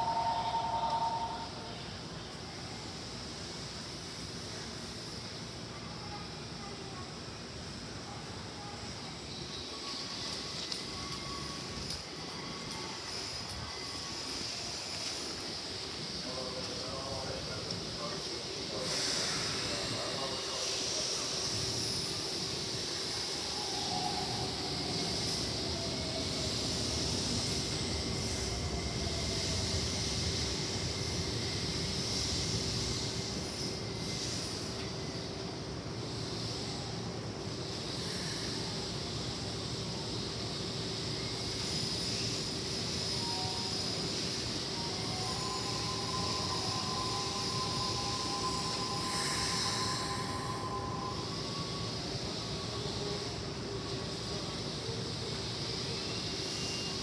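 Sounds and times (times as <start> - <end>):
electric train running: 0.0 - 5.8, 8.6 - 57.0
steady high tones: 41.4 - 54.4.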